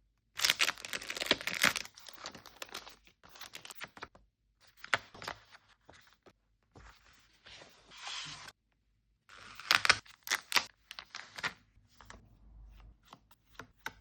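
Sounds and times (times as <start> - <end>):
packaging tearing and crinkling: 0.4 - 2.8, 9.4 - 10.7
packaging rustling: 0.4 - 2.9.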